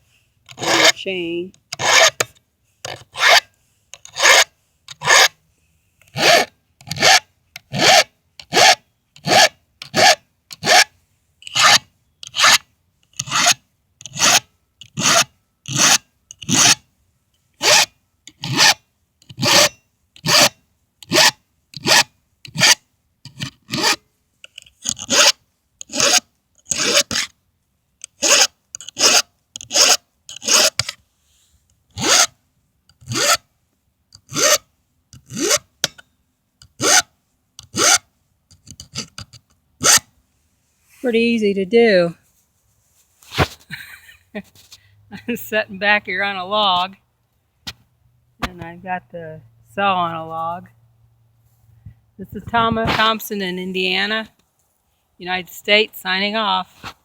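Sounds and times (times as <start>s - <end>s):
file rasping on saw chain: 0.5s - 1.0s, 1.7s - 2.3s, 2.9s - 5.4s, 6.1s - 16.8s, 17.6s - 24.0s, 24.8s - 27.3s, 28.1s - 31.0s, 32.0s - 32.3s, 33.0s - 33.4s, 34.2s - 34.6s, 35.2s - 36.0s, 36.8s - 38.1s, 38.8s - 40.1s.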